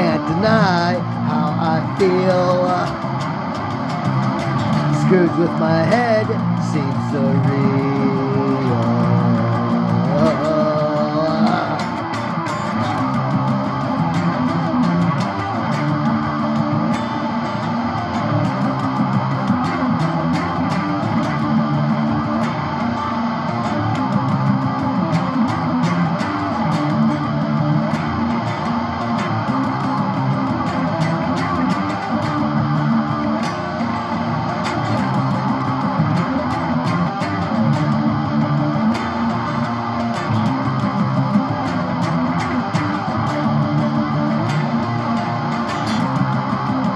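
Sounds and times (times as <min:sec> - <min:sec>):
guitar playing: 0:00.0 - 0:46.9.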